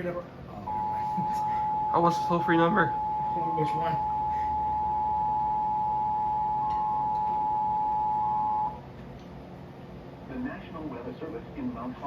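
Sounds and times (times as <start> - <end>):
two-tone alert alarm: 0.7 - 8.8.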